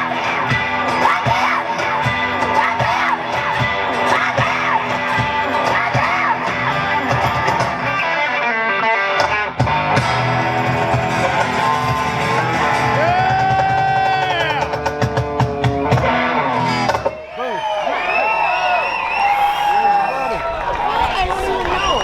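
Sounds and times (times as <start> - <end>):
live rock band playing: 0.0 - 17.2.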